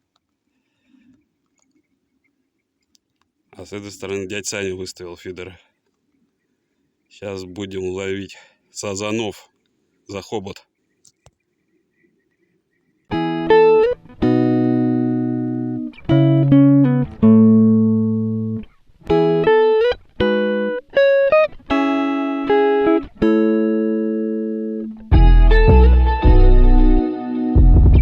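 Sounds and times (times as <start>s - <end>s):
plucked guitar chords: 13.1s - 28.0s.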